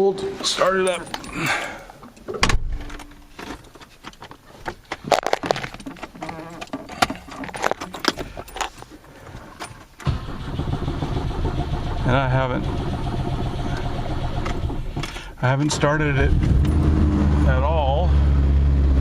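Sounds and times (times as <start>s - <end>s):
clicks and knocks: 2.0s - 10.0s
car engine cold start: 10.0s - 19.0s.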